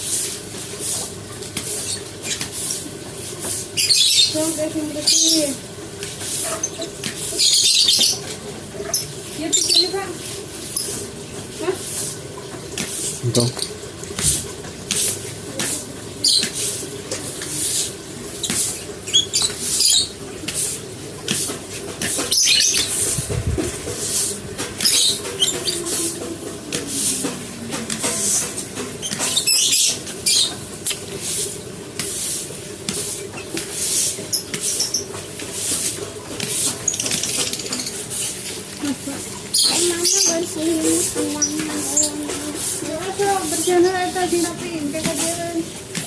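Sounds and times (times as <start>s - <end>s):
brush scrubbing: 0.0s - 8.3s, 9.3s - 12.2s, 14.2s - 46.0s.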